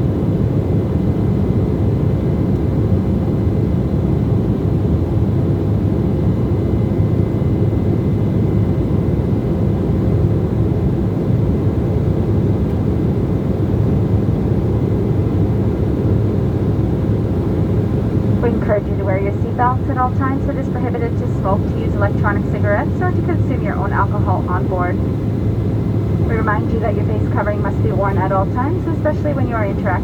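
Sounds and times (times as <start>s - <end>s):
jet engines and airflow rumble: 0.0s - 30.0s
faint steady hum: 16.0s - 30.0s.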